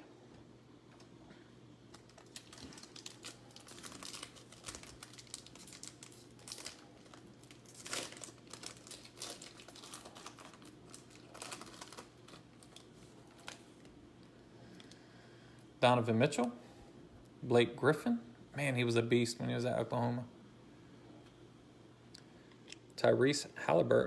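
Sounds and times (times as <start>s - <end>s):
trading cards rustling: 1.9s - 13.7s.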